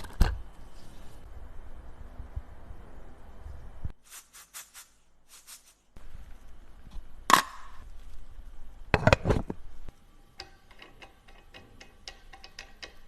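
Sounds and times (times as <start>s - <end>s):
metal tools clicking and tapping: 10.4s - 13.0s.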